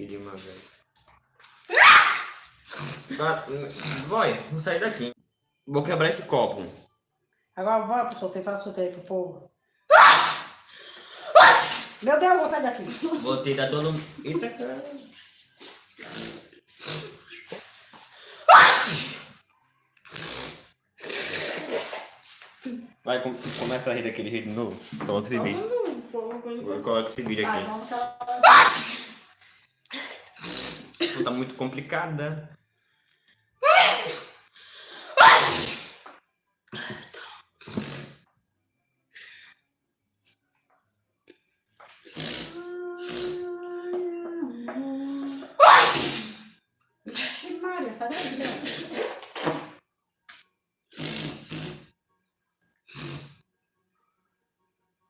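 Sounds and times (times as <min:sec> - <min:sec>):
noisy exhaling: 0:02.4 - 0:04.4, 0:15.2 - 0:19.4, 0:20.1 - 0:22.5, 0:23.4 - 0:23.9, 0:28.7 - 0:31.0, 0:36.8 - 0:38.3, 0:41.9 - 0:43.6, 0:50.9 - 0:51.9, 0:52.9 - 0:53.4
person sneezing: 0:09.9 - 0:10.6, 0:11.2 - 0:12.0, 0:18.3 - 0:19.3, 0:28.4 - 0:29.2, 0:33.6 - 0:36.0, 0:45.4 - 0:47.3, 0:48.1 - 0:49.7
sharp bursts of breath: 0:10.1 - 0:12.0, 0:15.3 - 0:19.4, 0:20.1 - 0:22.5, 0:33.9 - 0:36.1.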